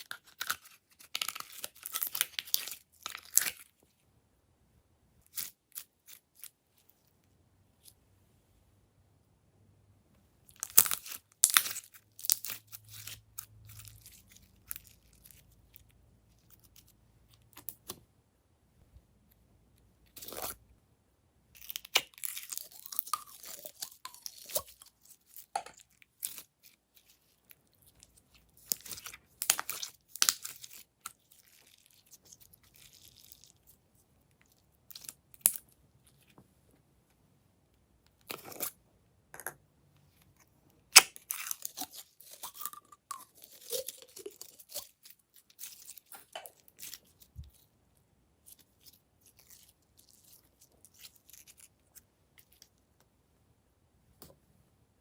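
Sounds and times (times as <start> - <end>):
slime crackling and crunching: 10.5 - 15.8, 21.6 - 35.6, 40.9 - 47.6.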